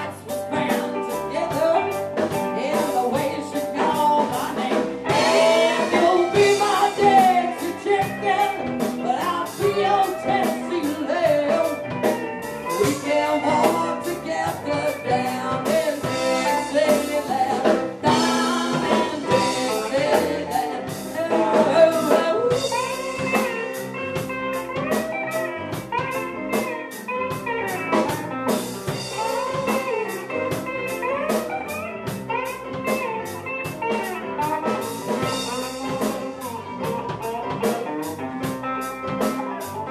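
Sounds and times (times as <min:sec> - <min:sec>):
person singing: 0:00.0 - 0:24.0, 0:33.9 - 0:39.9
drum kit: 0:00.0 - 0:39.9
electric guitar: 0:00.0 - 0:39.9
live band playing blues rock: 0:00.0 - 0:39.9.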